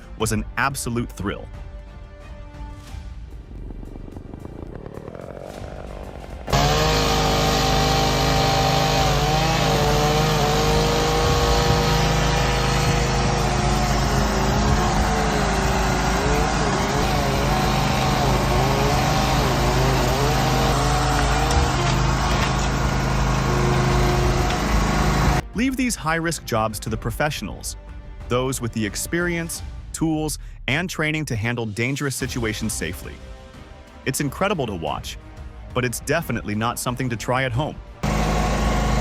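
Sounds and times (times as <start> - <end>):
low engine hum: 3.3 - 25.4, 38.0 - 39.0
chainsaw cutting: 5.3 - 25.4, 38.0 - 39.0.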